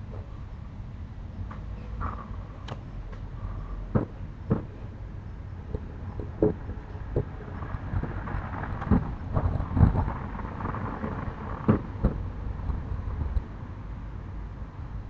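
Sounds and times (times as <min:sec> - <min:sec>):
low rumble: 0:00.0 - 0:15.0.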